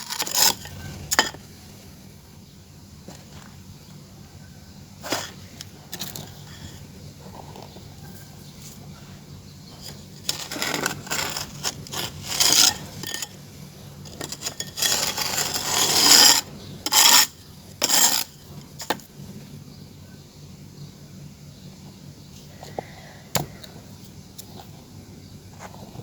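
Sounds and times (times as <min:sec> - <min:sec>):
hand scraping dry clay: 0:00.0 - 0:01.9, 0:05.0 - 0:19.1.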